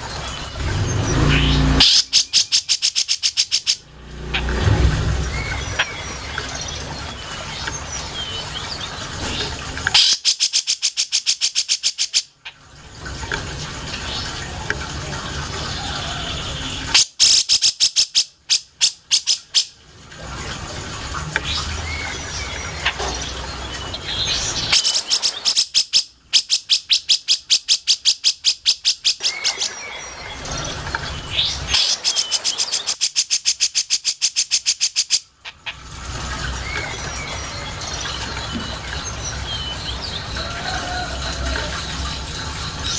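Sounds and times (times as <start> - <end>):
bulbul calling rapid notes: 1.2 - 6.6
low hum: 3.8 - 7.6.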